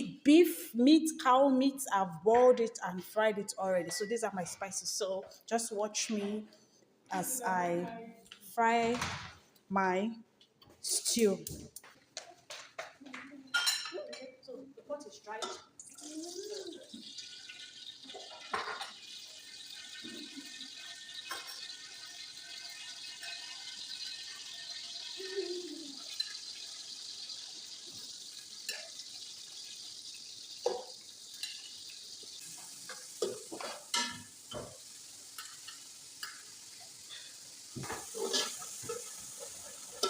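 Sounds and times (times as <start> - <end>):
food sizzling in oil: 15.8 - 40.0
spoon scraping pot: 37.8 - 40.0.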